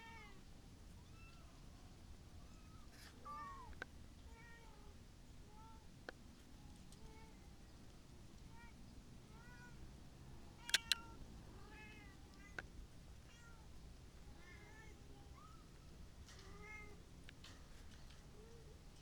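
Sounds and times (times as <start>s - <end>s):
sharp clicks: 10.7s - 11.1s.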